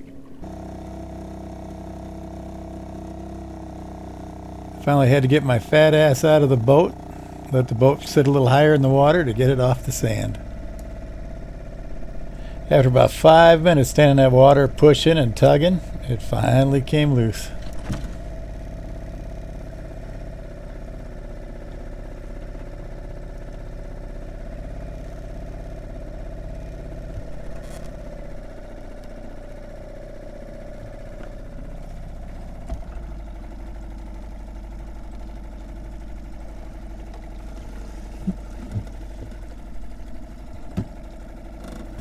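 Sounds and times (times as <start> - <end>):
motor humming with held tone: 0.0 - 42.0.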